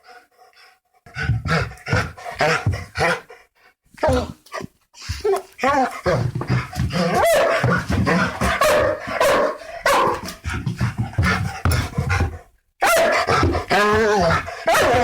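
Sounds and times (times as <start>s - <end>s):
large dog barking: 6.9s - 10.4s, 12.8s - 15.0s.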